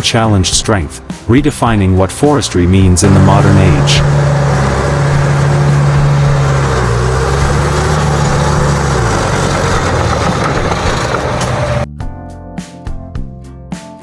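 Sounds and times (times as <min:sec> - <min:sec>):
heavy engine under load: 0:03.0 - 0:11.9.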